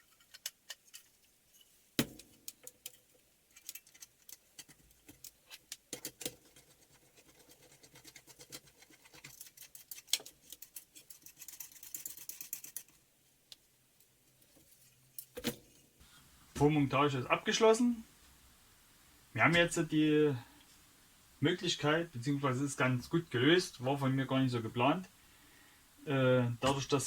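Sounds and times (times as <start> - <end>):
metal parts clicking and tapping: 0.0 - 13.0.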